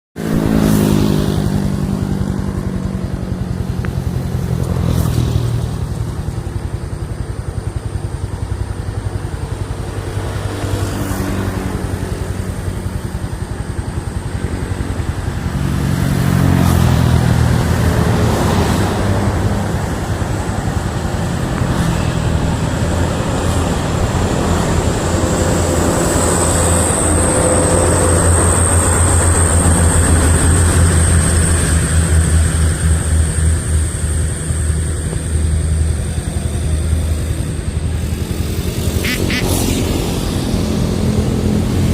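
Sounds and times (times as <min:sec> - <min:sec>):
motor engine running: 0:00.2 - 0:41.9
thin high whine: 0:17.2 - 0:41.9.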